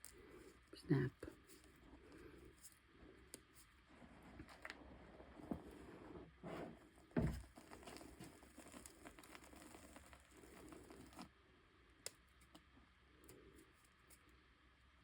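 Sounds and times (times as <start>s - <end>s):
chalk snapping and crumbling: 7.2s - 11.3s.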